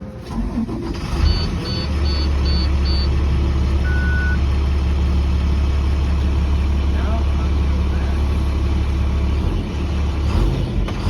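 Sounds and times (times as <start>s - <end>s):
vehicle engine starting and idling: 0.0s - 11.0s
long low beep: 1.3s - 3.1s, 3.8s - 4.4s.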